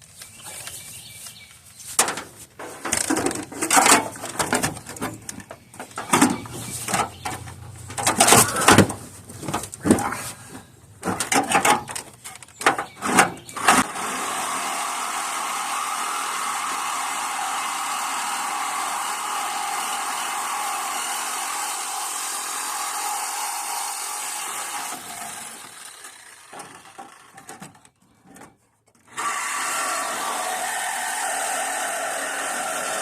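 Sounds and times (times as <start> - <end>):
electric saw cutting metal: 13.5 - 27.7, 29.1 - 33.0.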